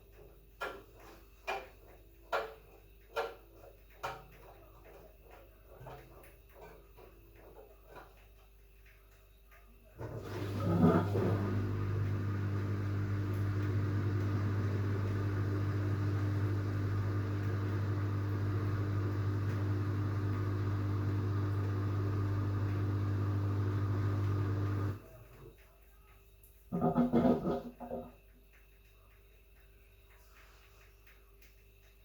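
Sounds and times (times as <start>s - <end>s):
washing machine humming: 10.0s - 25.6s.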